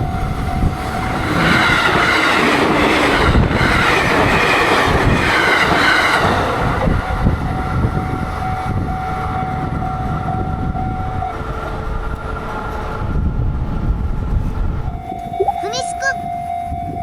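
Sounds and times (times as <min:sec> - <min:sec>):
level crossing warning bell: 0:00.0 - 0:01.2, 0:14.9 - 0:17.0
low rumble of receding train: 0:00.0 - 0:15.0.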